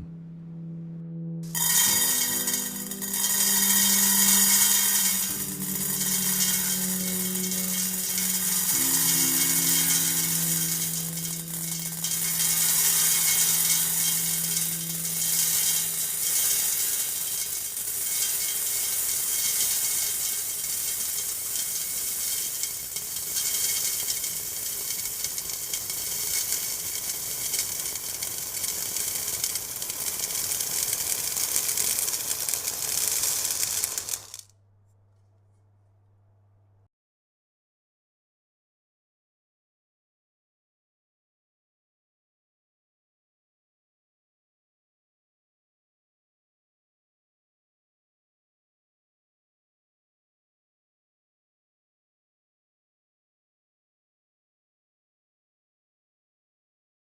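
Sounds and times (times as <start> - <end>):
low steady hum: 0.0 - 2.8
ball bearings pouring into metal tray: 1.5 - 34.4.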